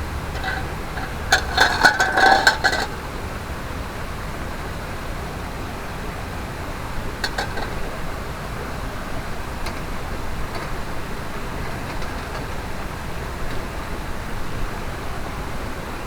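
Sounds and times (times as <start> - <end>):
cookware clinking together: 0.4 - 3.0, 7.2 - 7.9.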